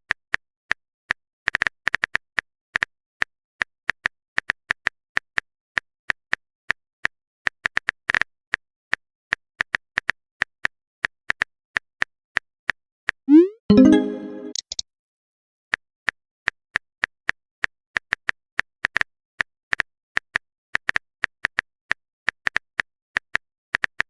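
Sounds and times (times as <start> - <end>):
touchscreen typing clicks: 13.3 - 14.8.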